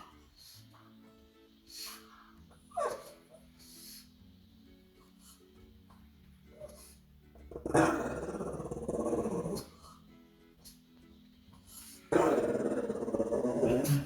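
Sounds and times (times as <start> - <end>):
dog growling: 2.6 - 3.5, 6.5 - 10.0, 12.0 - 14.0.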